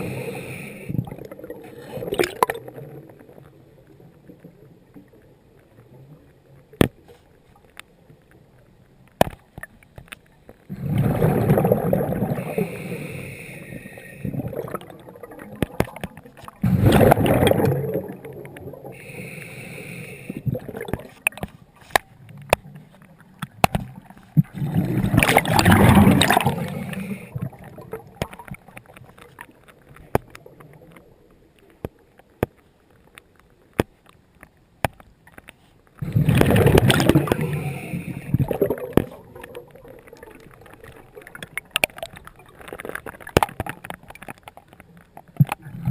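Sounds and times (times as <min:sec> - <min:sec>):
regulator hiss: 0:00.0 - 0:01.0, 0:12.4 - 0:14.3, 0:19.0 - 0:20.4
exhaled bubbles rushing: 0:01.0 - 0:03.3, 0:10.7 - 0:12.7, 0:14.2 - 0:16.0, 0:16.6 - 0:19.0, 0:20.4 - 0:21.2, 0:24.0 - 0:28.5, 0:36.0 - 0:42.1
small clicks: 0:02.1 - 0:10.7, 0:38.2 - 0:45.9.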